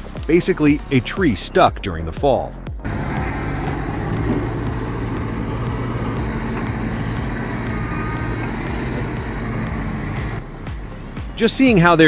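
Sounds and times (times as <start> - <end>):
engine droning steadily: 2.8 - 12.0.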